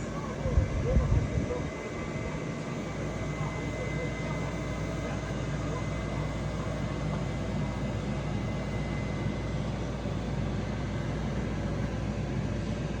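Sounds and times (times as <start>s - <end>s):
faint high whine: 0.0s - 13.0s
fan whirring with low hum: 0.0s - 13.0s.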